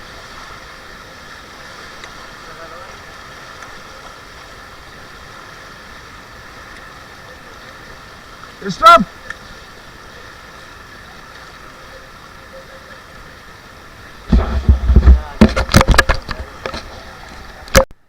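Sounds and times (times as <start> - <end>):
river rushing: 0.0 - 17.8
loud knocks and thumps: 14.3 - 16.5.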